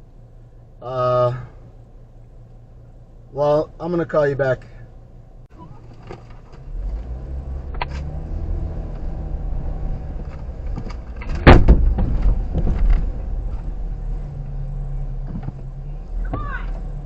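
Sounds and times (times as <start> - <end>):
low engine hum: 0.0 - 17.0
clatter of sharp knocks: 10.3 - 13.1.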